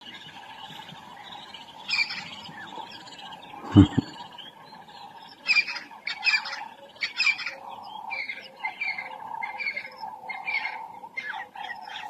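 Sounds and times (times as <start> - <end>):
steady hum: 3.5 - 4.1.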